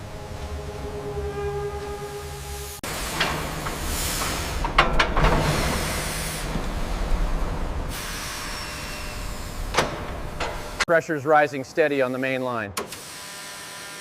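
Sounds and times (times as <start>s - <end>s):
steam hissing: 2.1s - 10.9s.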